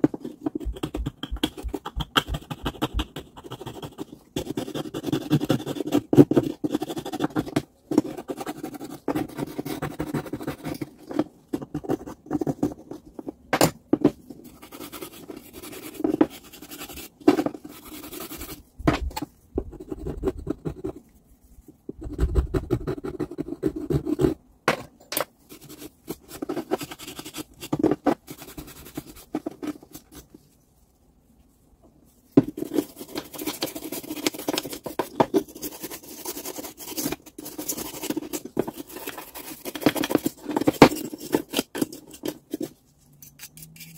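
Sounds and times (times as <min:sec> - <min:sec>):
hand scraping on metal parts: 0:32.3 - 0:43.9.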